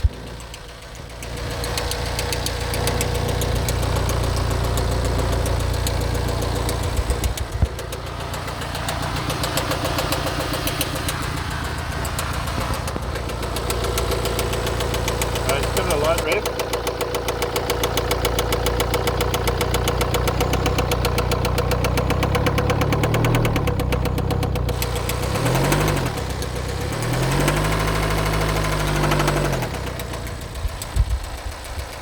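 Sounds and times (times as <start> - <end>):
car engine with knocking tick: 0.0 - 32.0.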